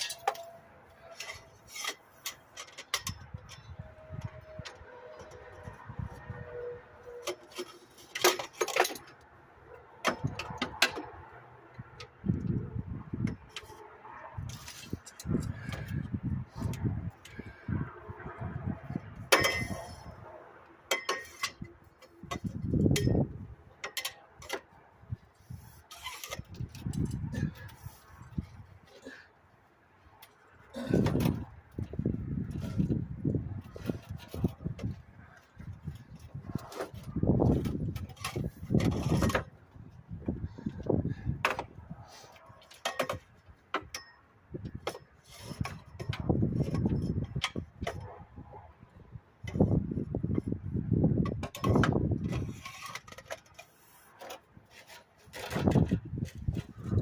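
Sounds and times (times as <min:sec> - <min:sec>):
metal tools clicking and knocking: 0:00.0 - 0:05.6, 0:07.2 - 0:09.2, 0:19.2 - 0:20.1, 0:20.9 - 0:24.7
low rumbling handling noise: 0:30.2 - 0:57.0.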